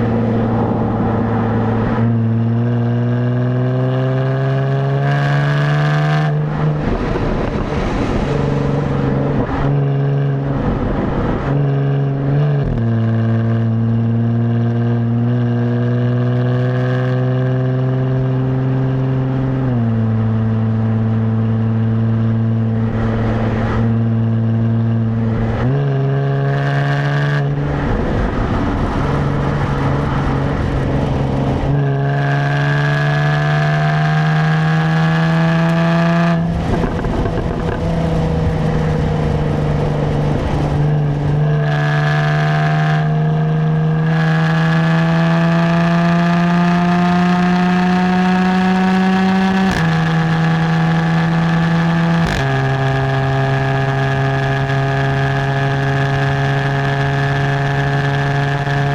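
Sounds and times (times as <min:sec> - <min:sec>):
car exhaust droning: 0:00.0 - 0:14.2, 0:19.5 - 0:58.9.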